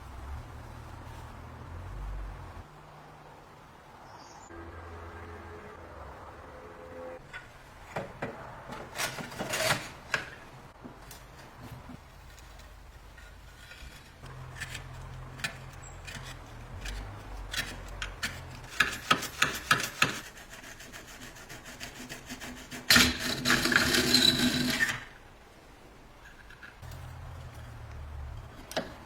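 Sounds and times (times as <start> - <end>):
loud scraping: 13.0 - 25.2.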